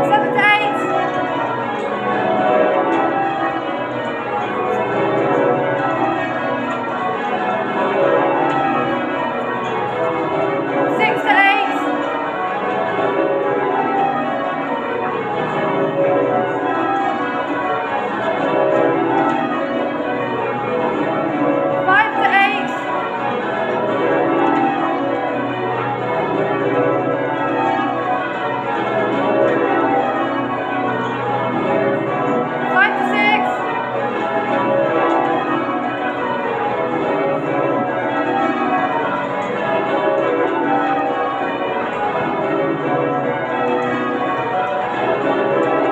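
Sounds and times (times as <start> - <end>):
church bells change ringing: 0.0 - 45.9.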